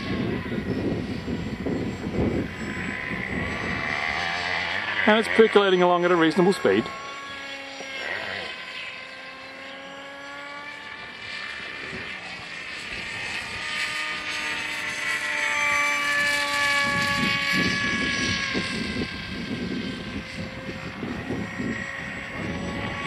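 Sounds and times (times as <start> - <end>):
wind buffeting microphone: 0.0 - 5.7, 11.1 - 23.0
model plane motor whining: 0.0 - 23.0.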